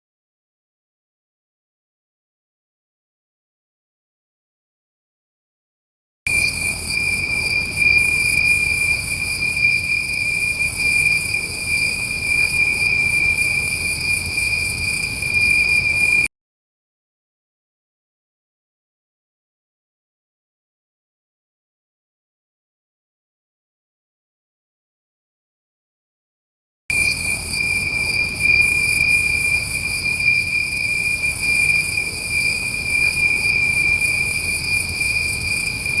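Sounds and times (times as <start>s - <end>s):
insects chirring: 6.3s - 16.3s, 26.9s - 36.0s
steady high insect trill: 6.3s - 16.3s, 26.9s - 36.0s.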